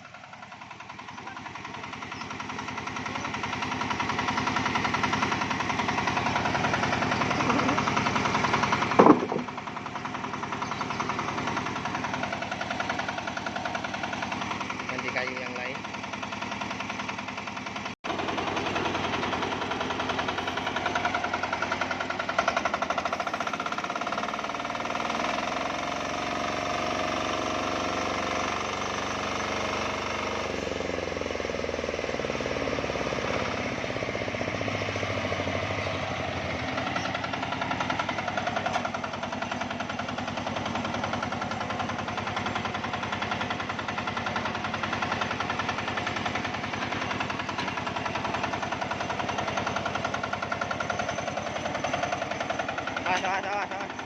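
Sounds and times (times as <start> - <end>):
diesel engine knocking: 0.0 - 54.0
saw cutting log: 8.8 - 9.5.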